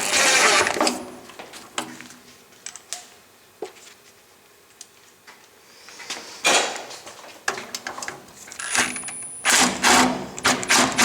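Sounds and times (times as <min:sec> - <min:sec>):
power drill driving screws: 0:08.6 - 0:11.0.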